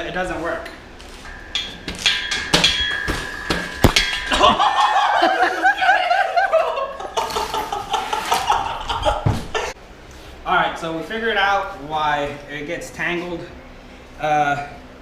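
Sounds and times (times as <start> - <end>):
metal clinks and clacks: 1.1 - 4.6.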